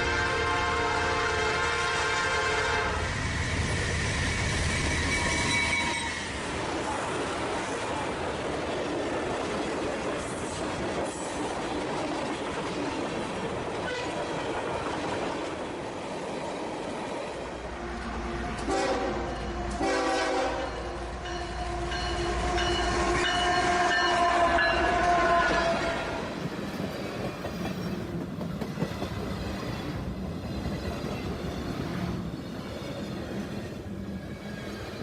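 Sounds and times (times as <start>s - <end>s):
multi-tone train horn blasts: 0.0s - 6.5s, 13.8s - 14.3s, 17.7s - 26.3s
train rumbling on rails: 0.0s - 35.0s.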